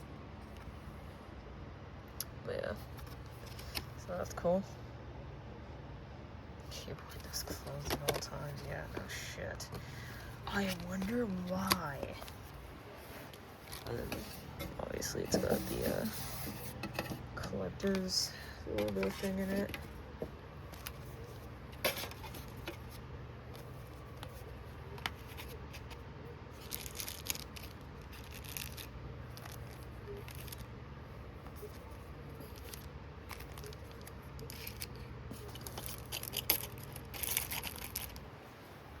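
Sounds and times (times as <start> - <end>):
steady low hum: 0.0 - 39.0
plastic and paper crinkling: 7.1 - 30.8, 31.4 - 38.4.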